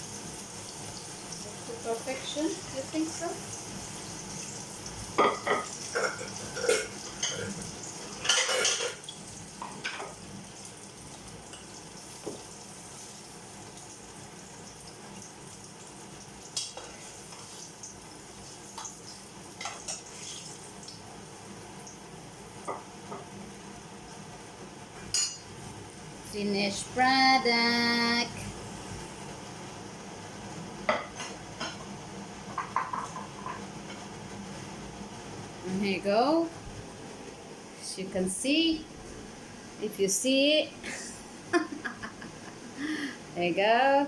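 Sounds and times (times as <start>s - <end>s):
faint sizzle: 0.0s - 44.0s
utensil scraping a cooking pan: 3.8s - 9.1s, 16.6s - 17.8s, 18.4s - 20.7s.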